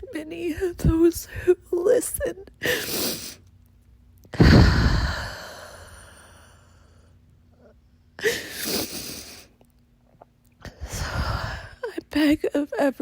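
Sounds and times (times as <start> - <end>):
woman sighing: 4.4 - 6.4
woman breathing: 4.4 - 9.5, 10.7 - 11.9.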